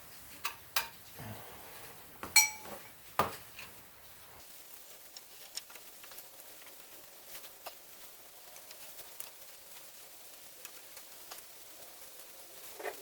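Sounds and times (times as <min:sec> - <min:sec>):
metal tools knocking: 0:02.2 - 0:03.3
metal tool clinking: 0:02.3 - 0:02.9.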